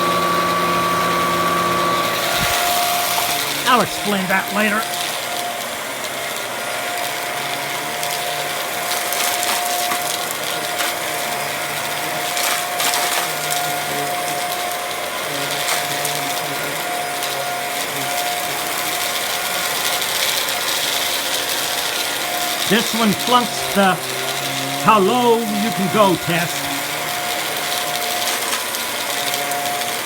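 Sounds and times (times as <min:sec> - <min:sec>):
vacuum cleaner running: 0:00.0 - 0:04.0.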